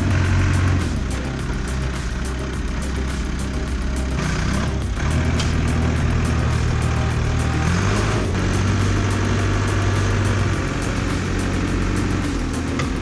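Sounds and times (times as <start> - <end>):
heavy machine engine running: 0.0 - 13.0.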